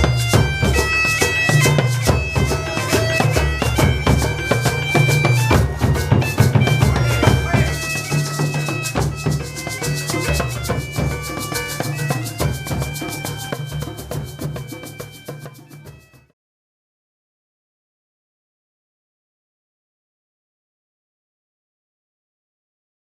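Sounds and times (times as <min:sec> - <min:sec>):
bagpipe melody with drones: 0:00.0 - 0:16.3
drums beating: 0:00.0 - 0:16.3.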